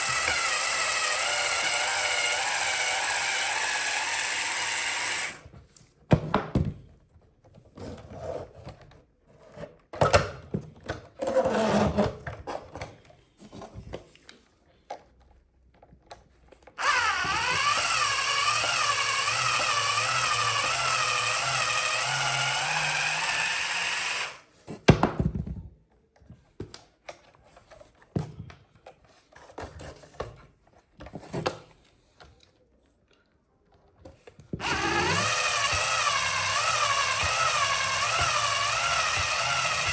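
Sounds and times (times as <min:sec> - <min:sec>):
plastic parts knocking and clicking: 0:05.5 - 0:07.6, 0:24.7 - 0:32.3.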